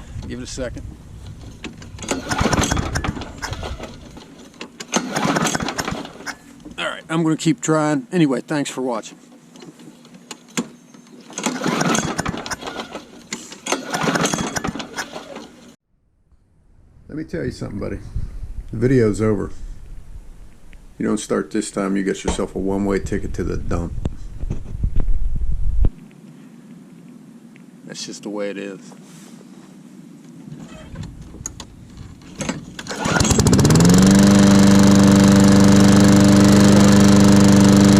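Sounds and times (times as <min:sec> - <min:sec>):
handling noise: 0:00.0 - 0:06.8, 0:29.5 - 0:34.2
mower recoil starter rattling whir: 0:00.0 - 0:06.8, 0:11.2 - 0:15.8, 0:30.6 - 0:37.9.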